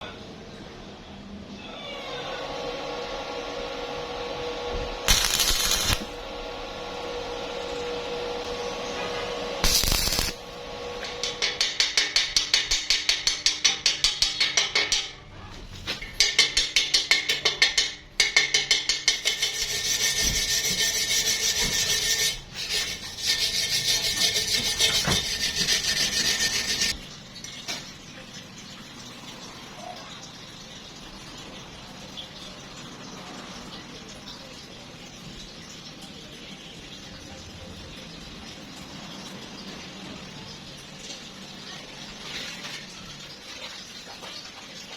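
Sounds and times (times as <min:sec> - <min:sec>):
hand tool rasping on metal: 0:05.1 - 0:06.1, 0:09.6 - 0:10.4, 0:19.1 - 0:27.0.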